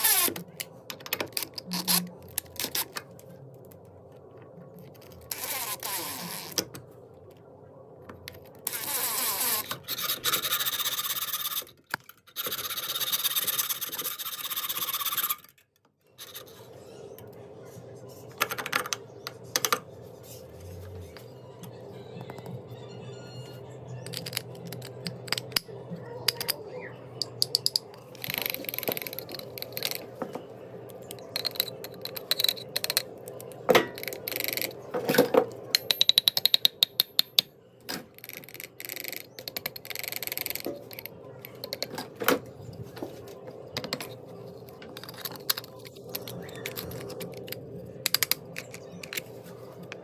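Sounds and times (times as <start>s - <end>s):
faint steady hum: 0.0s - 50.0s.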